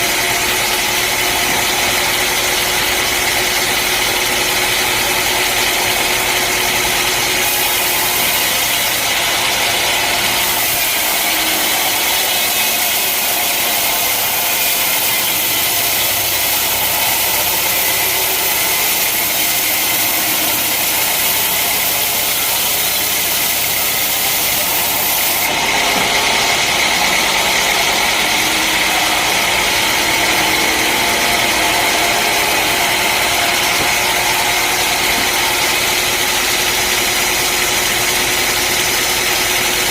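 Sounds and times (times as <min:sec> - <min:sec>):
sawmill engine hum: 0:00.0 - 0:39.9.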